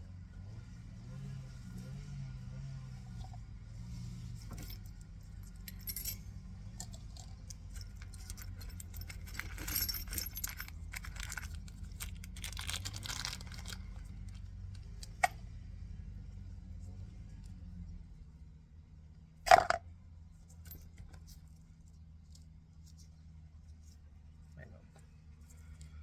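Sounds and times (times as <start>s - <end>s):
metal screws clinking in a tub: 4.4s - 14.3s.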